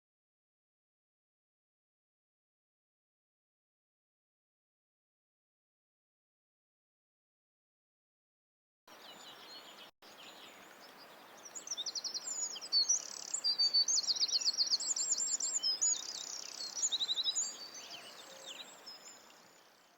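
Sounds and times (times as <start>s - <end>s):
songbirds trilling and chirping: 8.9s - 19.9s
steady outdoor hiss: 8.9s - 19.9s.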